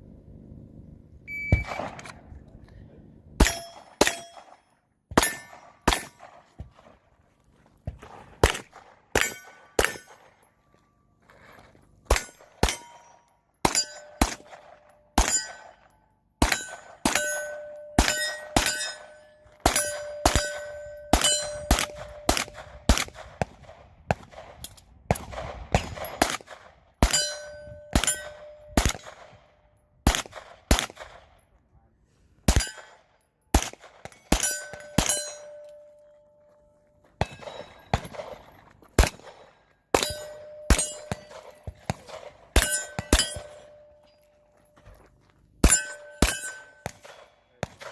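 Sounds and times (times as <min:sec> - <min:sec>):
pistol shots: 0:03.4 - 0:07.0, 0:08.0 - 0:10.4, 0:12.1 - 0:31.4, 0:32.5 - 0:35.7, 0:37.2 - 0:43.8, 0:45.6 - 0:47.9
steel plates ringing: 0:12.2 - 0:14.2, 0:16.5 - 0:22.3, 0:27.1 - 0:28.8, 0:34.2 - 0:36.0, 0:40.0 - 0:41.5, 0:42.6 - 0:44.3, 0:45.6 - 0:46.9.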